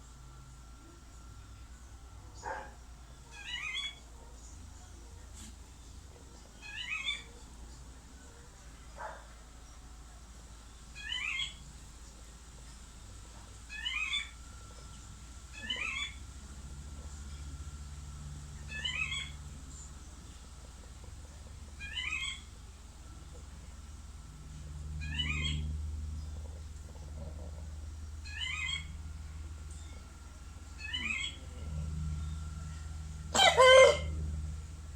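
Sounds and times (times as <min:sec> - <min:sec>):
chicken high-pitched call: 0:33.3 - 0:34.2
fainter lower chicken call: 0:33.3 - 0:34.2.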